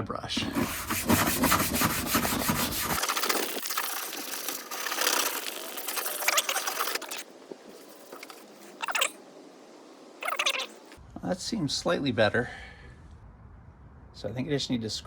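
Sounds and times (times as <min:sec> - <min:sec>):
brush scrubbing plastic: 0:00.4 - 0:09.1.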